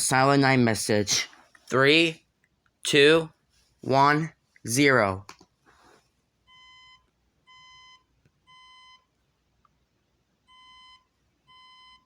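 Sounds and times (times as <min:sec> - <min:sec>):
fire alarm evacuation beeps: 0:06.5 - 0:09.1, 0:10.5 - 0:12.0.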